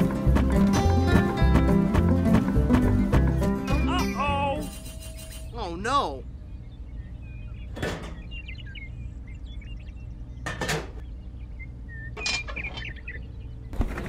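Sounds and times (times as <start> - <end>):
low steady hum: 4.8 - 14.0.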